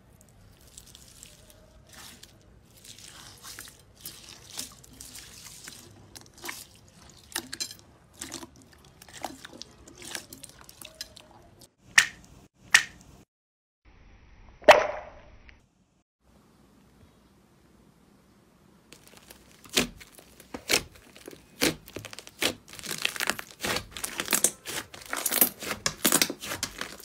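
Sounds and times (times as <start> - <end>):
slime squelching and popping: 19.0 - 27.0.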